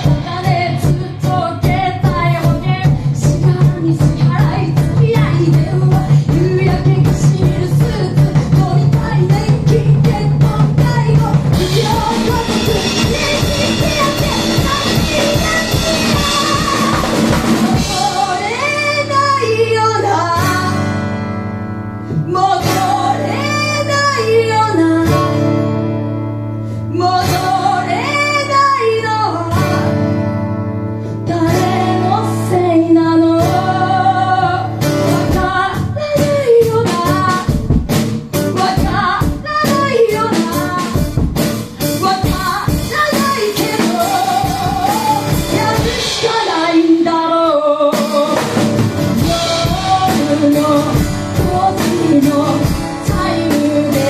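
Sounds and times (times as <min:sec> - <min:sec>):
fast dense drumming: 0:00.0 - 0:19.2, 0:36.9 - 0:47.1, 0:47.9 - 0:54.0
woman singing: 0:00.0 - 0:21.4, 0:22.0 - 0:26.0, 0:26.8 - 0:30.4, 0:31.1 - 0:54.0
rock band playing: 0:00.0 - 0:32.8, 0:33.4 - 0:54.0
electric guitar chords: 0:00.0 - 0:36.0, 0:36.8 - 0:54.0.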